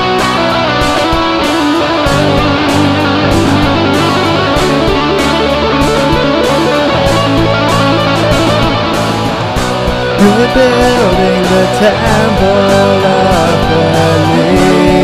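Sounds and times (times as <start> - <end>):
bass guitar: 0.0 - 15.0
guitars: 0.0 - 15.0
steady drum beat: 1.9 - 13.8.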